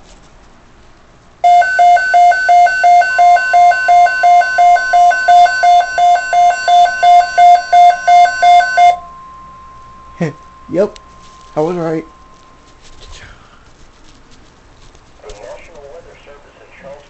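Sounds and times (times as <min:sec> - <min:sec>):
alternating two-tone alert beeping: 0:01.4 - 0:12.8
faint steady tone: 0:01.4 - 0:14.5.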